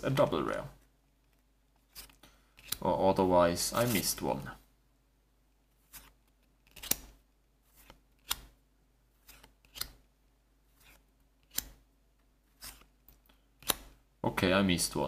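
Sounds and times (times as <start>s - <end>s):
cards snapping as flipped: 1.3s - 2.8s, 5.9s - 8.6s, 9.2s - 10.0s, 10.8s - 11.8s, 12.6s - 14.0s.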